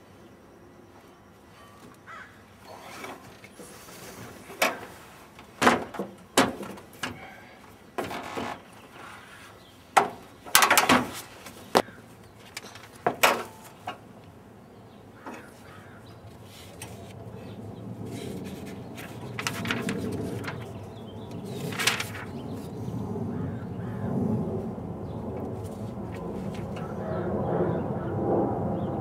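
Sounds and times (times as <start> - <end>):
hand tools knocking and clanking: 4.6 - 7.3, 10.0 - 11.2
low background rumble: 16.9 - 29.0.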